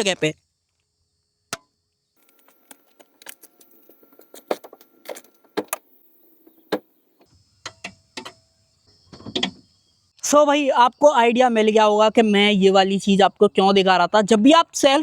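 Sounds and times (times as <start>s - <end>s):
relay clicks: 2.2s - 7.2s
faint steady electrical hum: 2.2s - 10.2s.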